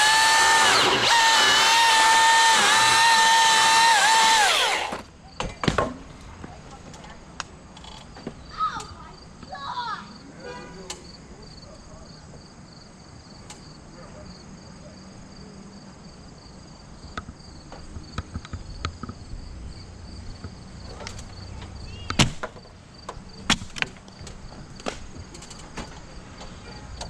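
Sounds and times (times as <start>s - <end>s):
insect chorus: 7.6s - 27.0s
sharp cracks or thuds: 22.1s - 22.6s.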